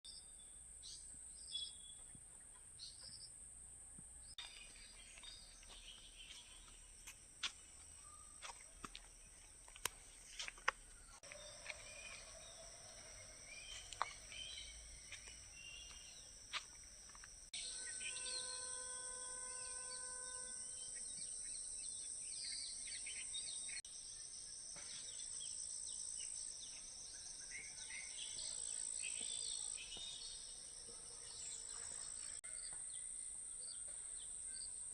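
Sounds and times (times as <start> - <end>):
high-pitched insect drone: 13.8 - 21.9.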